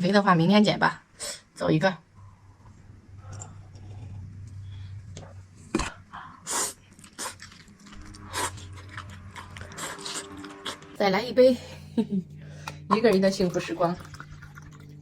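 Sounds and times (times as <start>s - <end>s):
low hum: 1.9s - 15.0s
sipping liquid: 13.8s - 15.0s.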